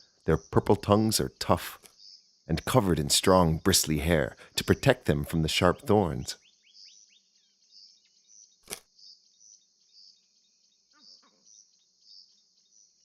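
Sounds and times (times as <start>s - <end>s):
bird chirps: 0.0s - 13.0s.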